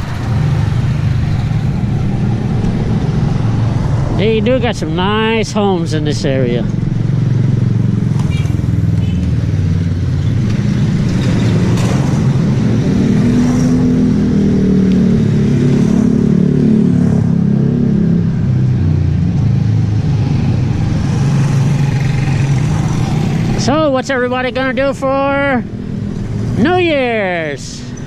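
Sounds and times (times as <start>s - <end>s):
vehicle engine running: 0.0s - 15.5s.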